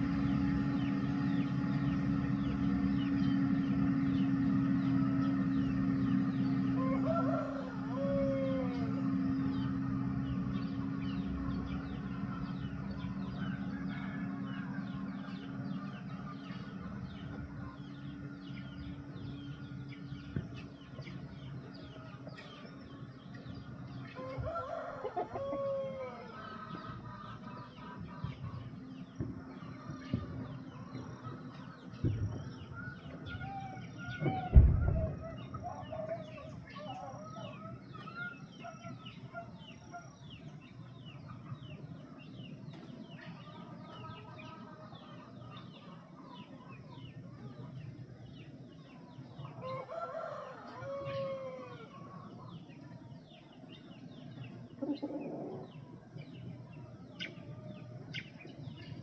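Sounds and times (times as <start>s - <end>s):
chickens clucking: 0.0s - 59.0s
low machine hum: 0.0s - 59.0s
heavy thump: 34.2s - 35.2s.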